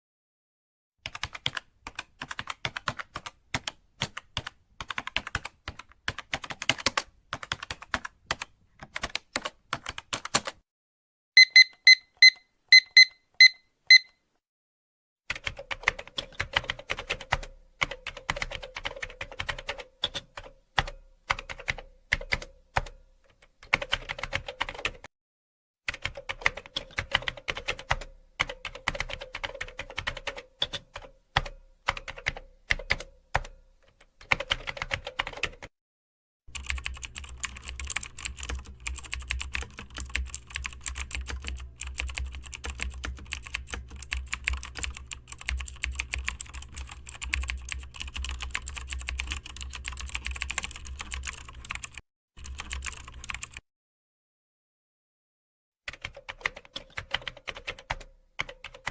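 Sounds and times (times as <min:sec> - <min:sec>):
typing on computer keyboard: 0:01.0 - 0:10.6, 0:15.3 - 0:25.1, 0:25.9 - 0:35.8, 0:36.5 - 0:53.6, 0:55.9 - 0:58.9
short electronic beeps: 0:11.4 - 0:14.2.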